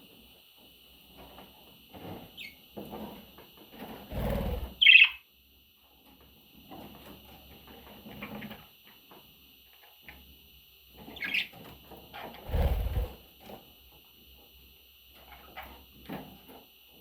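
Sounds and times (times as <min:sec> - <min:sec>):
budgerigar chirping: 0:04.8 - 0:05.2
low muffled noise: 0:12.5 - 0:13.2.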